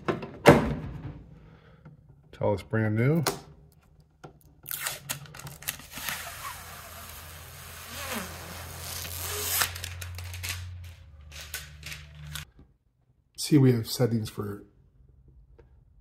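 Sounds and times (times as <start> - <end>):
plastic packaging crinkling: 4.7 - 12.4.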